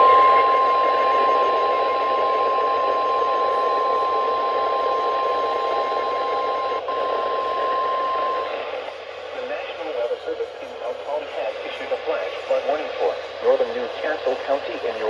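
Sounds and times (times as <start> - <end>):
steady alarm tone: 0.0 - 8.8.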